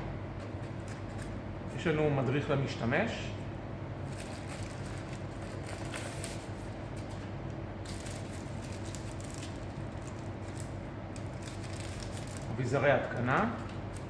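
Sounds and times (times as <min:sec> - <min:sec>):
low background hum: 0:00.0 - 0:14.0
packaging rustling and crackling: 0:04.1 - 0:07.2, 0:07.8 - 0:12.6.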